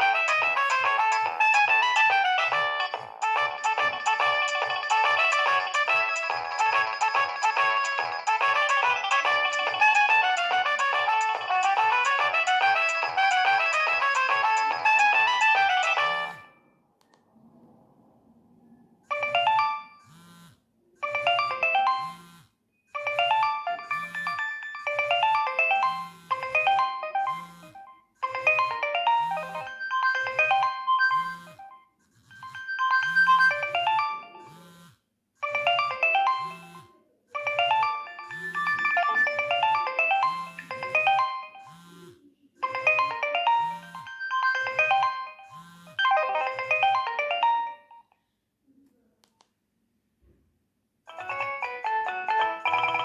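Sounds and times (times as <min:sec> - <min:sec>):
electronic ringtone melody: 0:00.0 - 0:16.7, 0:19.1 - 0:48.2, 0:51.1 - 0:53.0.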